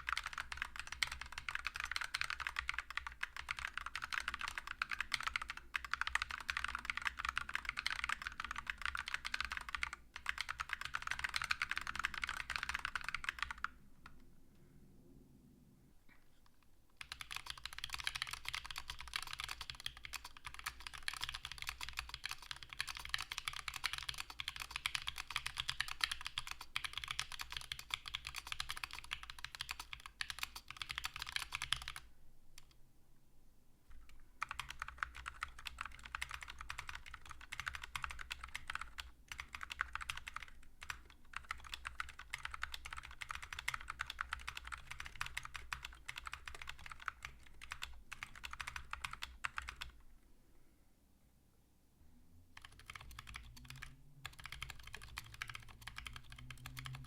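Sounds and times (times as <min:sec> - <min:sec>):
typing on mechanical keyboard: 0:00.0 - 0:14.2, 0:17.0 - 0:32.8, 0:34.0 - 0:50.0, 0:52.6 - 0:57.0.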